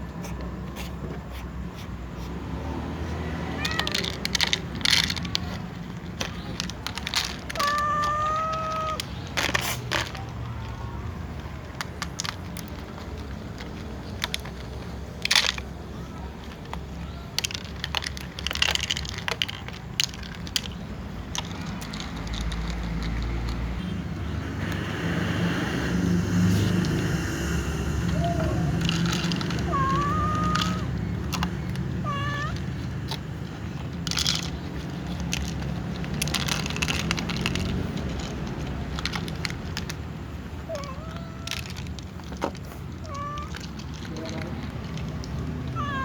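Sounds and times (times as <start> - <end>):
cat meowing: 3.5 - 4.3, 7.5 - 9.2, 28.0 - 31.2, 31.9 - 32.9, 40.7 - 41.7, 43.0 - 43.8, 45.7 - 46.0.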